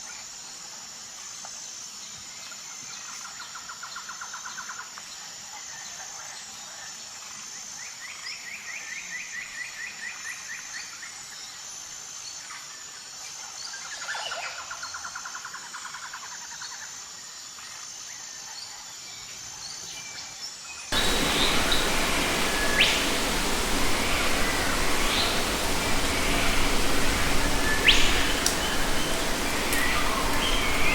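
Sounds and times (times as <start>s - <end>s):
bird rising whistle: 21.0s - 30.9s
birds trilling: 21.0s - 30.9s
loud steady rushing noise: 21.0s - 30.9s.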